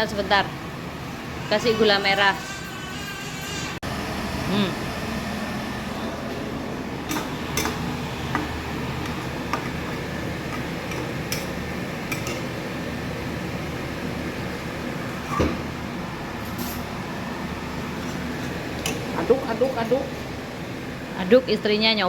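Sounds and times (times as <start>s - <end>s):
steady background hum: 0.0s - 22.0s.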